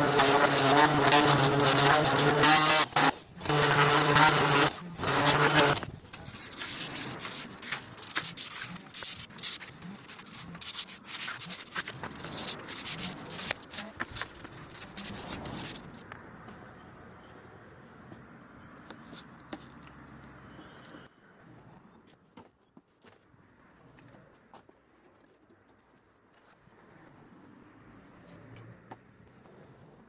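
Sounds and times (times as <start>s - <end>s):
electric sander motor: 0.0s - 5.9s
hand sanding wood: 0.0s - 15.8s.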